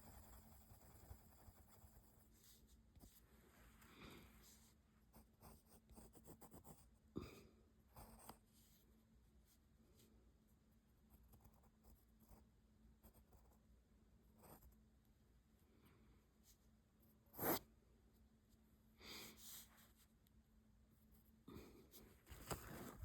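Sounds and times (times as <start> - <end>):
pencil scratching on paper: 0.0 - 3.2, 4.4 - 7.0, 8.0 - 8.8, 14.4 - 14.8, 17.3 - 17.6.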